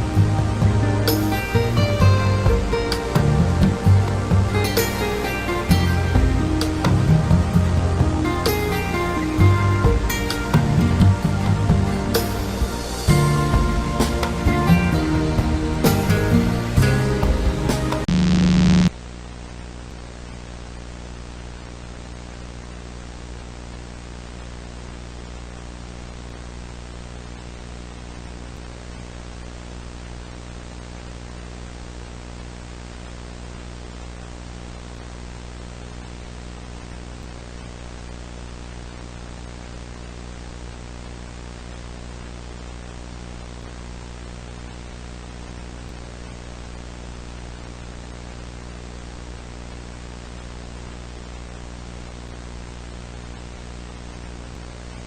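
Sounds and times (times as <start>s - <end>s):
static hiss: 0.0s - 55.0s
low hum: 17.9s - 19.1s.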